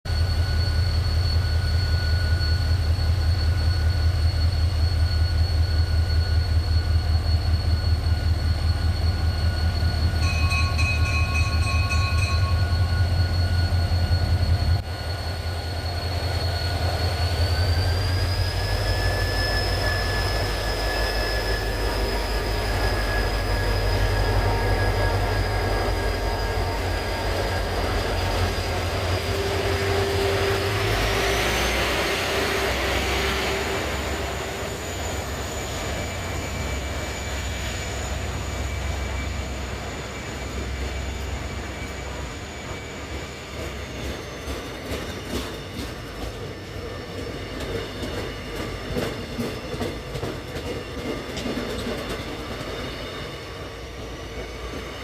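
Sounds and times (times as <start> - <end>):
diesel locomotive rumble and whine: 0.0 - 55.0
locomotive bell ringing: 0.1 - 17.0, 18.0 - 44.8.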